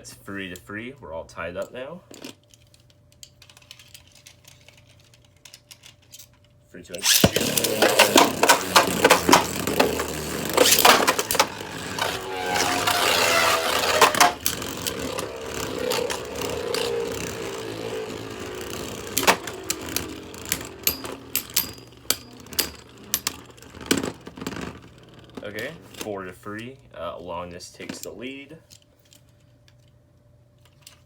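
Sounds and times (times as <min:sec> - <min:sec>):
spinning top launcher rush: 0:07.0 - 0:23.0
spinning tops clashing: 0:07.0 - 0:25.1
spinning tops whirring: 0:07.0 - 0:26.0.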